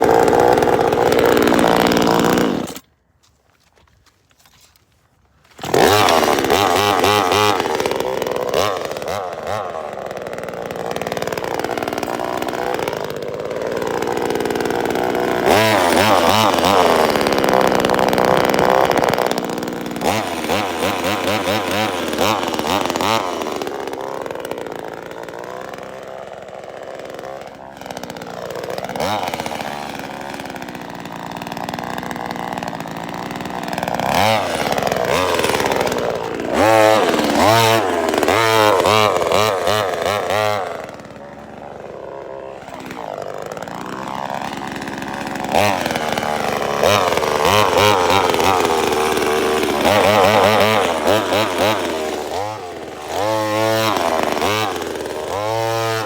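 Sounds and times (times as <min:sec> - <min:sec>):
chainsaw engine revving: 0:00.0 - 0:02.9, 0:05.5 - 0:56.0.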